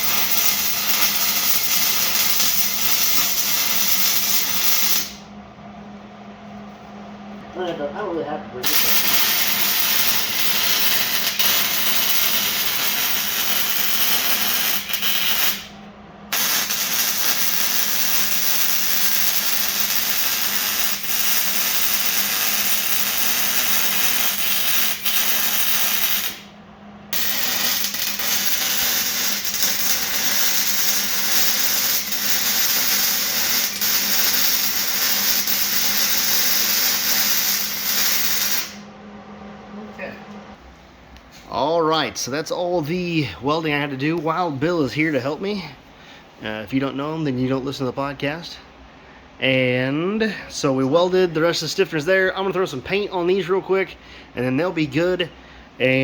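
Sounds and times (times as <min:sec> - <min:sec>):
welding arc crackle: 0:00.0 - 0:05.3, 0:08.6 - 0:26.5, 0:27.1 - 0:38.9
faint welder hum: 0:00.0 - 0:56.0.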